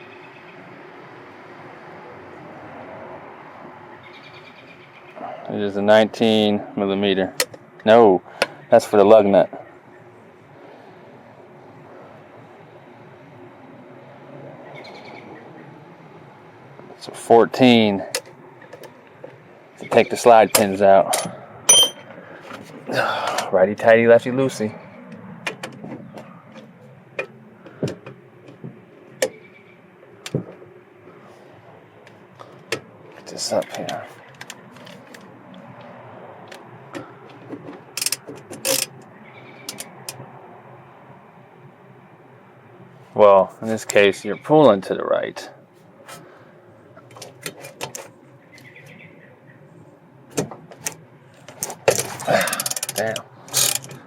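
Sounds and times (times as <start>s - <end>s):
wrench clicks and metal knocks: 20.6s - 22.0s, 38.0s - 39.0s, 51.6s - 54.0s
sharp metal knocks: 21.1s - 22.1s.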